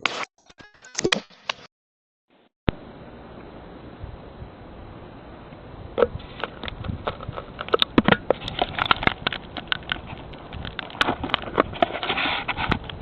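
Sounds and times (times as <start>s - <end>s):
brief rustle: 10.0s - 13.0s.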